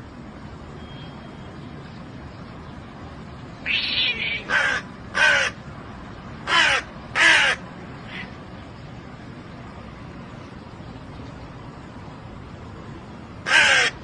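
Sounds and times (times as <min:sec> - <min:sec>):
crow cawing: 0:03.6 - 0:05.6, 0:06.4 - 0:08.4, 0:13.4 - 0:14.0.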